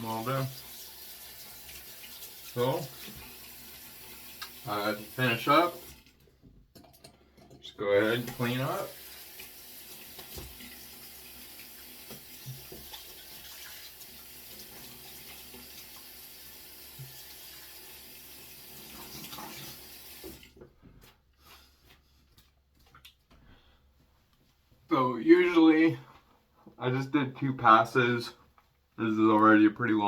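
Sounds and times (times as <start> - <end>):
sink tap running water: 0.0 - 6.2, 7.9 - 20.6.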